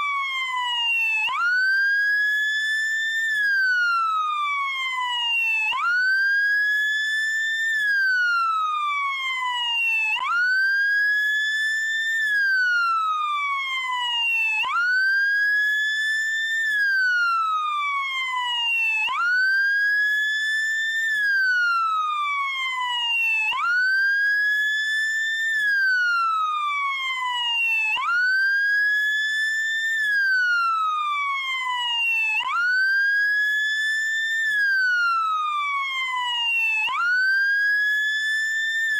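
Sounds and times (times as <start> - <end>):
police siren wailing: 7.5 - 15.7, 16.3 - 38.9.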